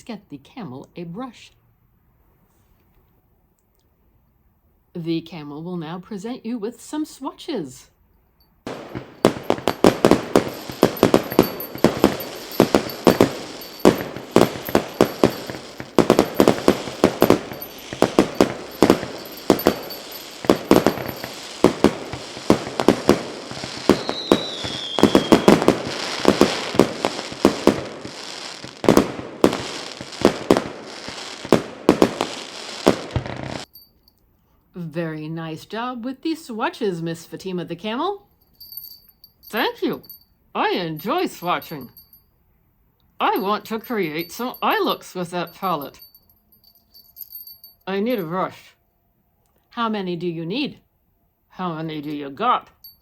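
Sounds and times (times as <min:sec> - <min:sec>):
falling firework whistle: 0:08.7 - 0:33.6
fireworks bangs and crackles: 0:08.7 - 0:33.7.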